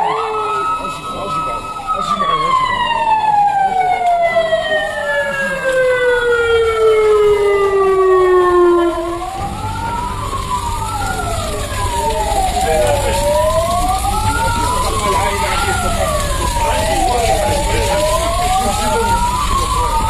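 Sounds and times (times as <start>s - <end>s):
evacuation sirens wailing: 0.0s - 20.0s
low rumble: 6.6s - 20.0s.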